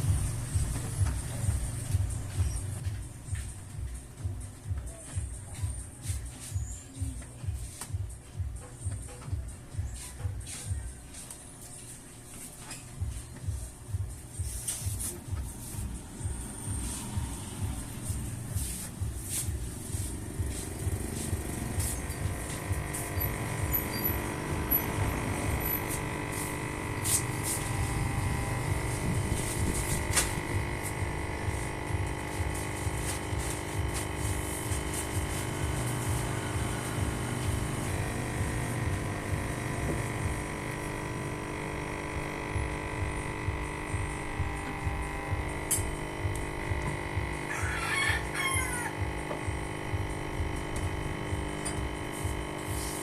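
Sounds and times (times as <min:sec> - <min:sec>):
printer mechanism rattling and whining: 0:20.0 - 0:47.5, 0:48.2 - 0:53.0
rooster crowing: 0:47.4 - 0:49.4.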